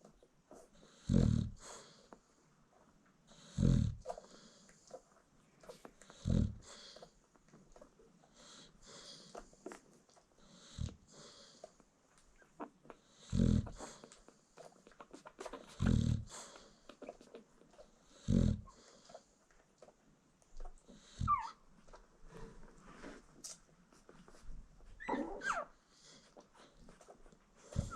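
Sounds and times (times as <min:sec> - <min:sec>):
dog snoring: 0:00.5 - 0:02.1, 0:03.3 - 0:05.0, 0:05.7 - 0:07.1, 0:08.3 - 0:09.8, 0:10.4 - 0:11.7, 0:12.6 - 0:14.8, 0:15.5 - 0:17.3, 0:18.0 - 0:19.3, 0:20.8 - 0:21.6, 0:27.6 - 0:27.9
soft breathing: 0:04.0 - 0:20.0, 0:20.6 - 0:27.9.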